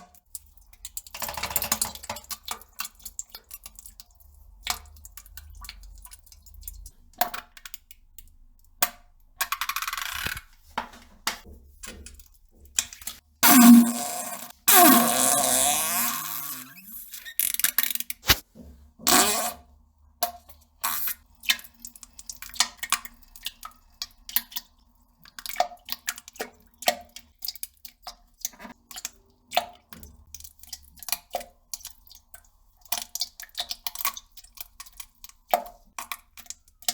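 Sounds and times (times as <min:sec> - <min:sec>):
fart sound sliding down: 0:13.4 - 0:17.1, 0:19.1 - 0:19.6.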